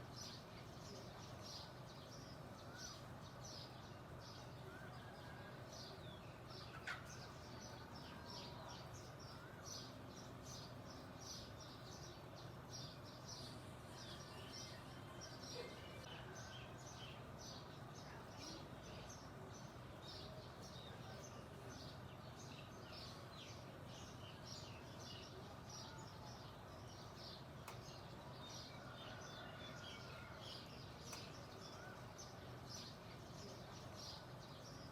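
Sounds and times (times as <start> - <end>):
faint low background hum: 0.0 - 34.9
songbirds chirping: 0.0 - 34.9
sharp tick: 27.6 - 27.8.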